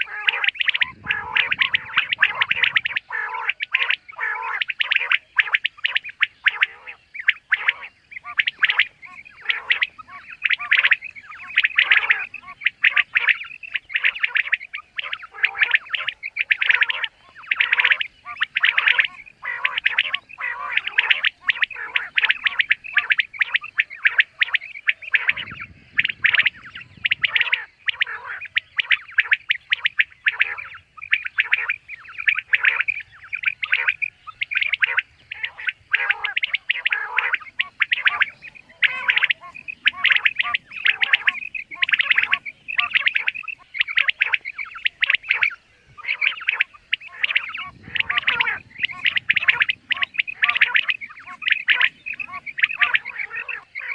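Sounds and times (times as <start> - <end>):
quail calling: 0.0 - 53.9.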